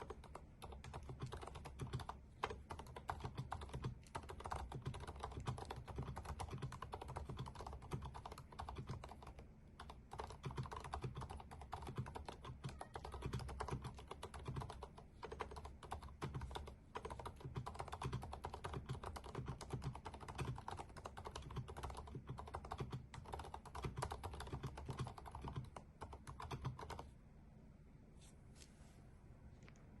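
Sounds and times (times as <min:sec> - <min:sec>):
keyboard typing clicks: 0:00.0 - 0:27.1.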